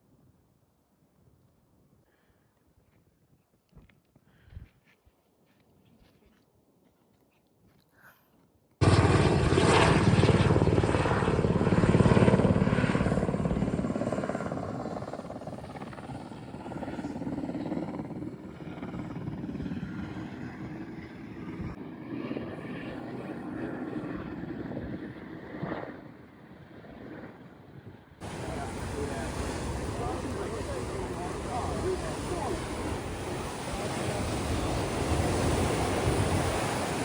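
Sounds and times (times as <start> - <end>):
aircraft flying overhead: 8.8 - 37.0.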